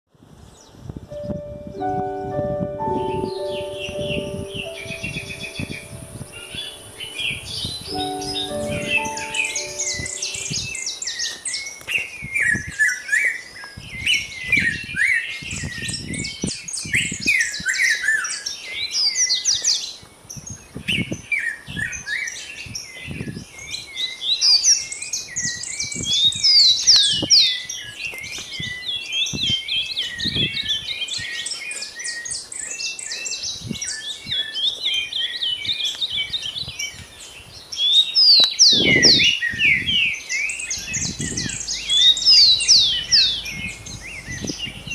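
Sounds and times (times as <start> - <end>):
small birds chirping: 2.8 - 44.9
low thumps: 40.6 - 44.9.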